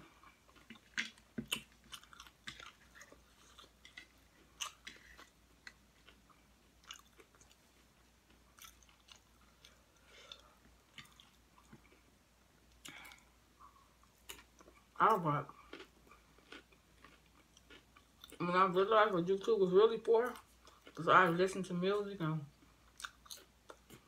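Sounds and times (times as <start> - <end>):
person chewing crunchy chips: 0.0 - 12.0, 15.6 - 18.4, 22.8 - 24.0.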